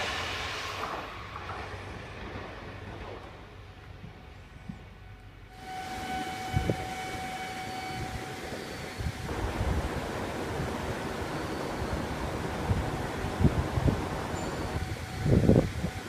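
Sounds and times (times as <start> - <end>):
train wheels thumping: 0.0 - 5.1
steady whine: 0.0 - 16.0
train rumble: 0.0 - 16.0.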